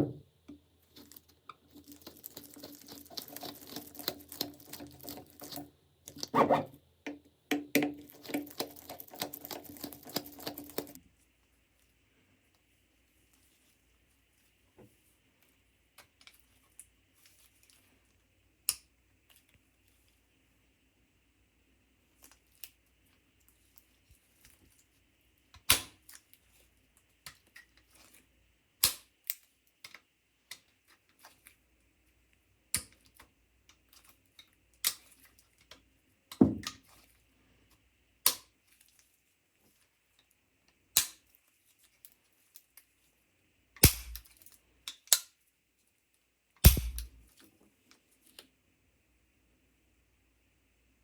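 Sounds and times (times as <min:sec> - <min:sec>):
metal gun parts clicking: 0:43.8 - 0:45.3, 0:46.6 - 0:47.2.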